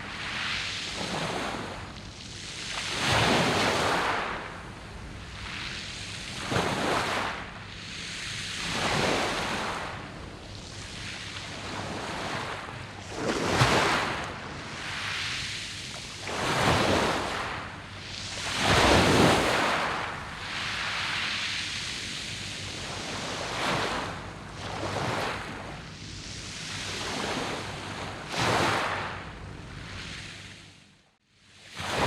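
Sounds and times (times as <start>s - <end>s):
waves washing on pebble beach: 0.2s - 1.9s, 2.6s - 25.6s, 26.7s - 29.2s, 31.8s - 32.0s.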